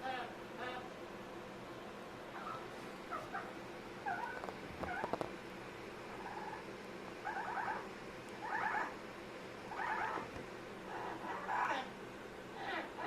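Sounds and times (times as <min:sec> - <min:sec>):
parrot calling: 0:00.0 - 0:00.9, 0:02.3 - 0:05.2, 0:06.2 - 0:09.0, 0:09.7 - 0:10.3, 0:10.9 - 0:13.0.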